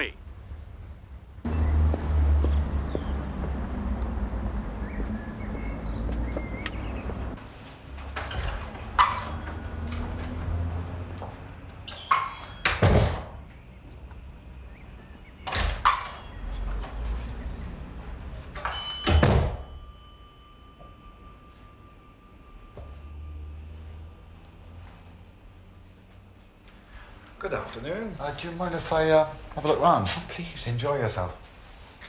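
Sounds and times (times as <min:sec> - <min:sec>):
heavy door thunks and bangs: 0:12.1 - 0:13.5, 0:15.4 - 0:16.2, 0:19.0 - 0:19.7
faint high ringing tone: 0:15.8 - 0:16.9, 0:18.6 - 0:26.2
faint high whine: 0:19.6 - 0:28.8.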